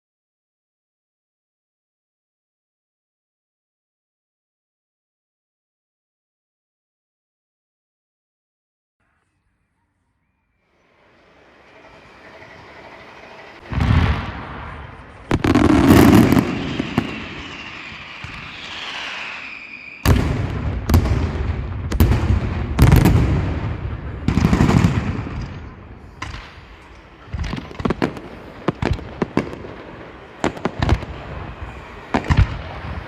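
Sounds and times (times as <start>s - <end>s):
firework whistle falling: 10.7s - 21.7s, 22.8s - 33.0s
fireworks bangs: 10.8s - 33.0s.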